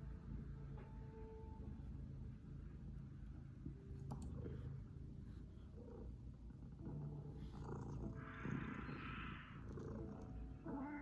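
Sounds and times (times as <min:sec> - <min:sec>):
cat purring: 0:04.1 - 0:11.0.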